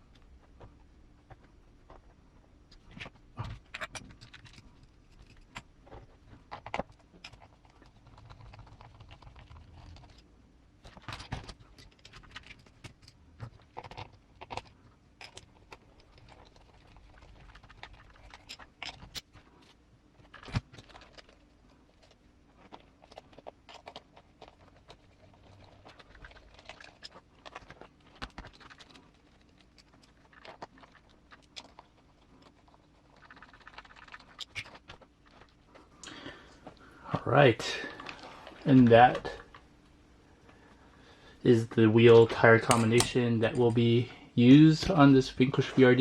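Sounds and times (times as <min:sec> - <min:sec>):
small plastic parts clicking: 0:02.7 - 0:36.8.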